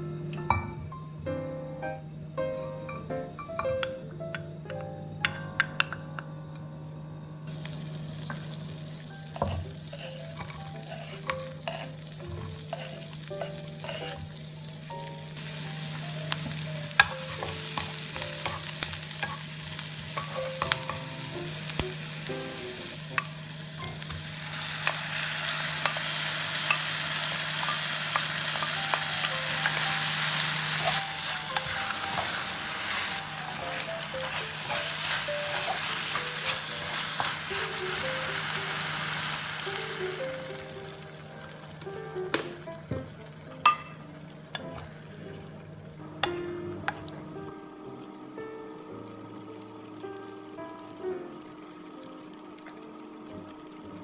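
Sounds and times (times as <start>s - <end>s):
chicken sizzling in a pan: 7.5s - 47.4s.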